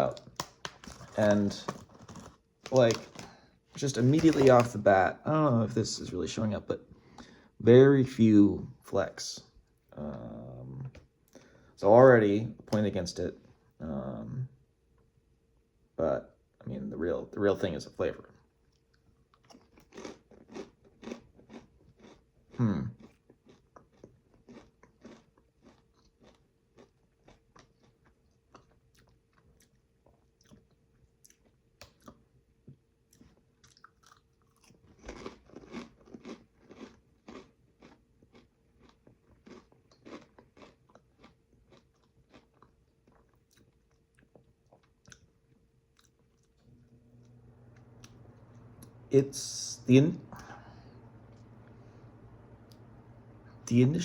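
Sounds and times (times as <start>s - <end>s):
rice crisps crunching: 0.0s - 4.8s, 23.5s - 26.9s, 34.0s - 43.3s, 47.3s - 54.0s.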